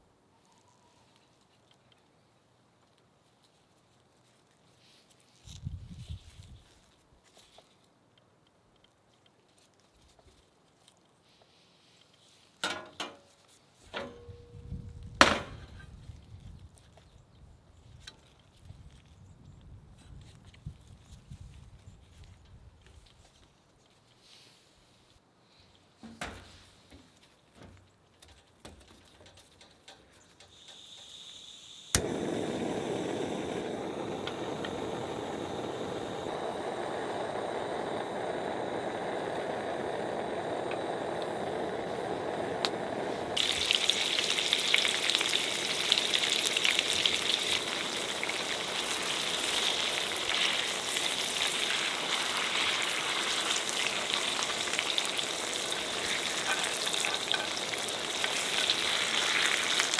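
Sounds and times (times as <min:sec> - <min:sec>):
click: 0:32.0 - 0:32.3, 0:42.6 - 0:42.9
tofu frying in oil: 0:32.8 - 0:59.9.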